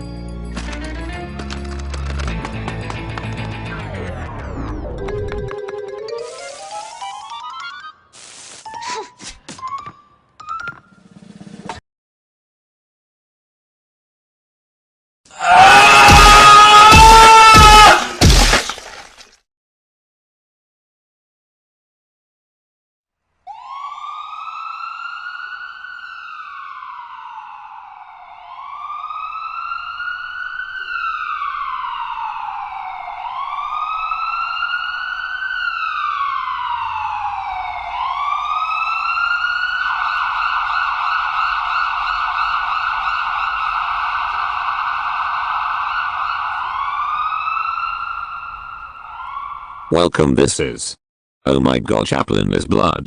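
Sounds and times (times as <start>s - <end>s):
ambulance siren: 3.5s - 8.1s, 23.5s - 50.0s.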